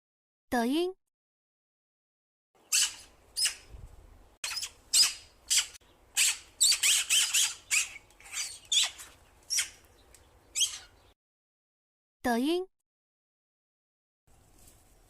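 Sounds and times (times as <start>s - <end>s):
small bird chirping: 2.6s - 3.8s, 4.4s - 11.2s.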